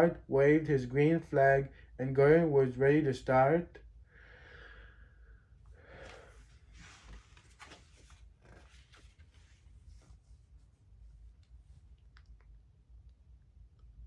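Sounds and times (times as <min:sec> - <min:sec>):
faint rustling: 0:05.8 - 0:12.7.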